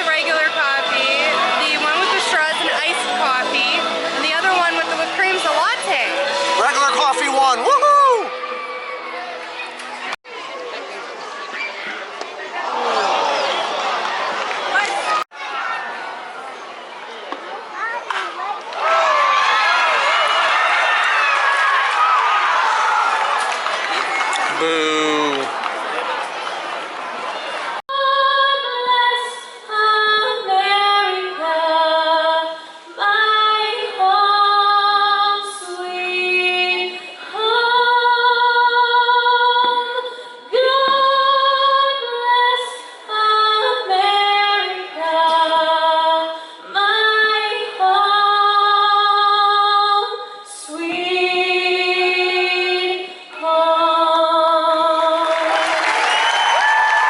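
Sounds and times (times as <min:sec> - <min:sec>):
crowd applause: 0:12.4 - 0:16.6, 0:18.7 - 0:27.8, 0:55.0 - 0:57.0
woman singing with vibrato: 0:27.9 - 0:55.5.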